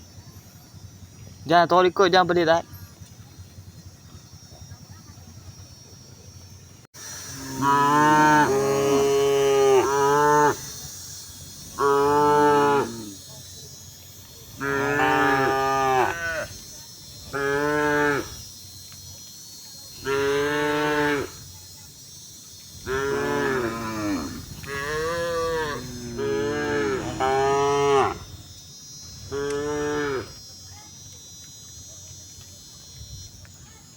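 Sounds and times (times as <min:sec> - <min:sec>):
cow mooing: 0:07.4 - 0:10.6, 0:14.6 - 0:16.5, 0:22.8 - 0:28.3.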